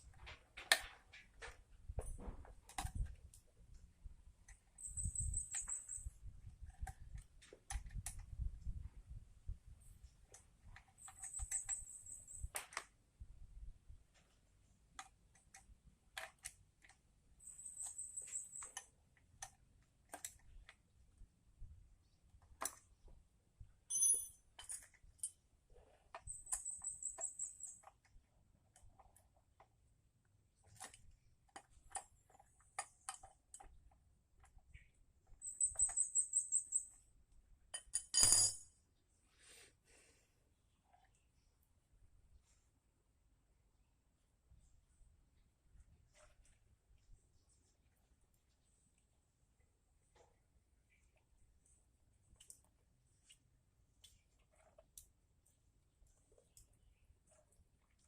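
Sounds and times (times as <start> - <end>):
small metal parts clicking: 4.5 - 6.1, 10.8 - 12.8, 37.8 - 38.7.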